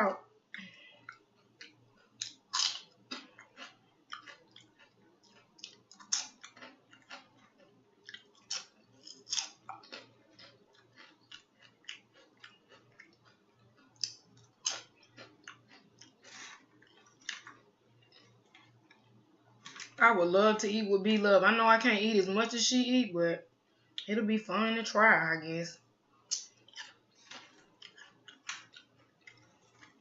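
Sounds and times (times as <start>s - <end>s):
wet chewing and lip smacking: 0.5s - 20.0s, 26.3s - 30.0s.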